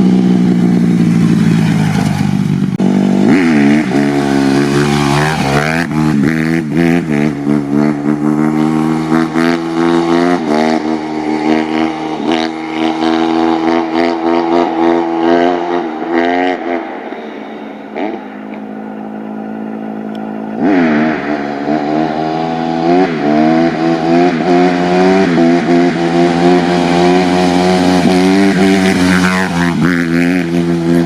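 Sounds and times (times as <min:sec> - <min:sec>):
dirt bike engine revving: 0:00.0 - 0:17.1, 0:17.9 - 0:31.0.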